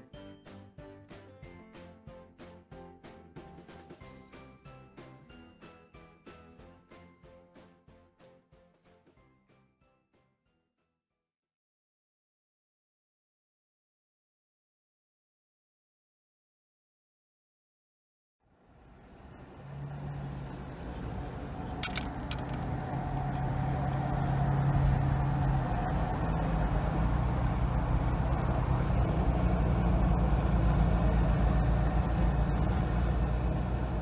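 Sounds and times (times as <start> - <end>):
car engine humming: 18.7 - 34.0.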